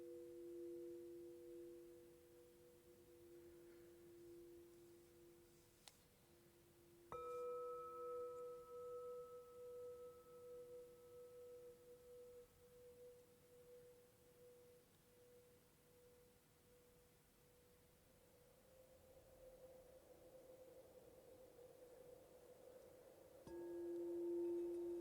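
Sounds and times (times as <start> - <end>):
lower singing bowl tone: 0.0 - 5.5, 7.1 - 17.2, 23.4 - 25.0
crystal singing bowl ringing: 7.1 - 14.8, 23.5 - 25.0.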